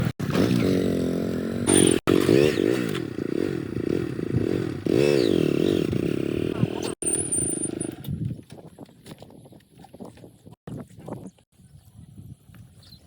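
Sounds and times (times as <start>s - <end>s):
engine revving: 0.0s - 8.0s.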